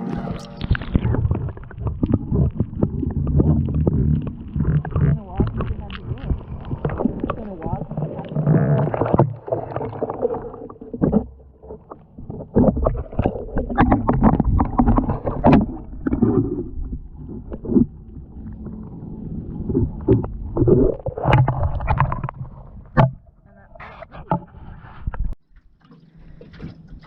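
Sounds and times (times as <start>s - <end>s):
wind rumble on microphone: 0.0s - 9.4s
water sloshing and gurgling: 0.0s - 27.0s.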